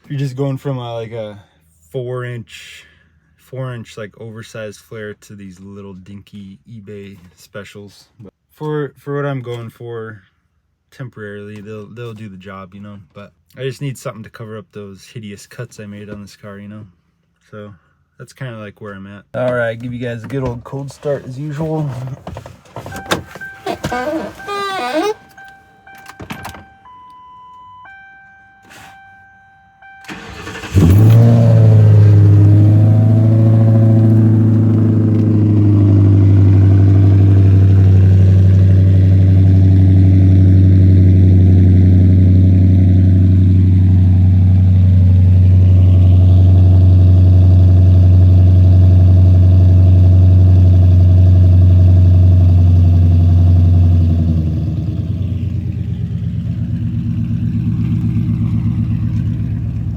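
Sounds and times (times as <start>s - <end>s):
car engine idling: 20.9s - 26.9s, 29.8s - 59.9s
engine cranking: 22.1s - 26.5s, 30.1s - 38.8s.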